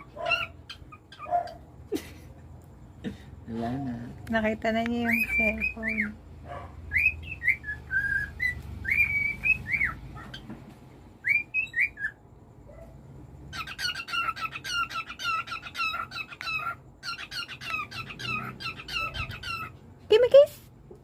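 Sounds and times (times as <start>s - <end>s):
cockatiel chirping rapidly: 0.0s - 1.6s, 5.0s - 6.2s, 6.9s - 10.5s, 11.3s - 12.2s, 13.5s - 19.8s
cockatiel whistling: 6.9s - 10.4s, 11.2s - 12.2s.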